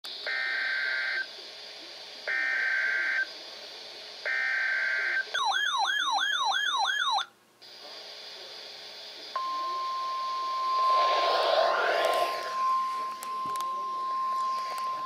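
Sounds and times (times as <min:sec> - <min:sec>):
digital data tone bursts: 0:10.2 - 0:13.6
wavering siren-like alert tone: 0:10.5 - 0:13.6.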